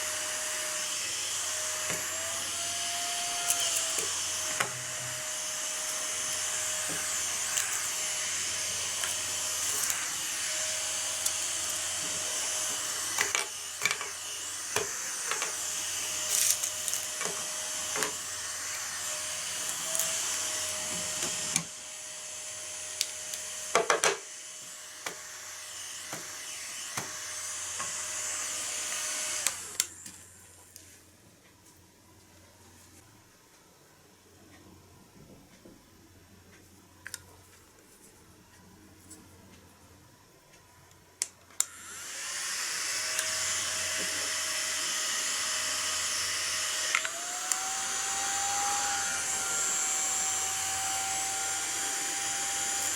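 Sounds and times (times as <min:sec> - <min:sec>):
small vacuum cleaner running: 0:00.0 - 0:30.4, 0:41.6 - 0:52.9.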